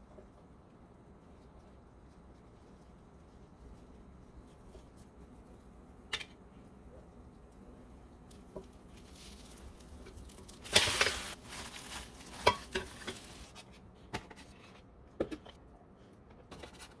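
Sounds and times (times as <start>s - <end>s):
food sizzling in oil: 10.5s - 13.5s.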